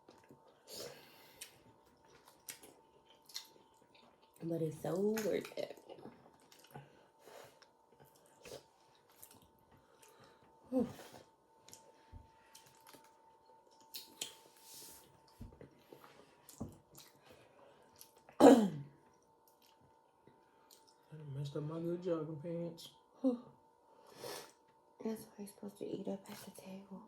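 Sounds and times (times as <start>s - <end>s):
people chewing: 0.0s - 4.4s, 5.0s - 18.4s, 19.0s - 21.1s
faint steady hum: 0.0s - 27.0s.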